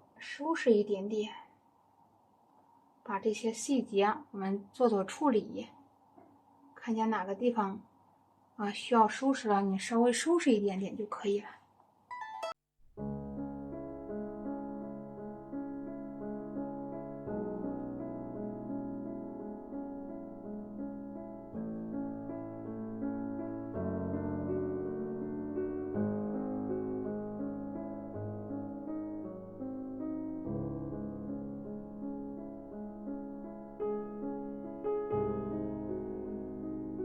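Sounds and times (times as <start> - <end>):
soft piano music: 12.1 - 37.0.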